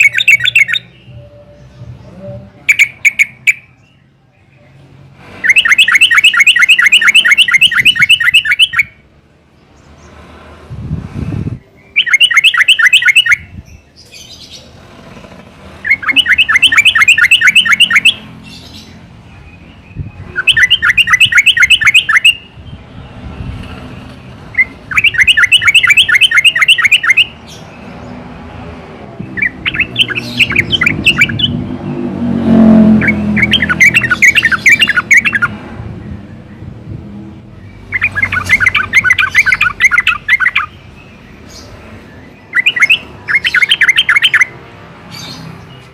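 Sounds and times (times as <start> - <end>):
bird singing bubbling notes: 15.8 - 18.2, 20.3 - 22.5, 24.6 - 27.4, 29.4 - 31.6, 32.9 - 35.5.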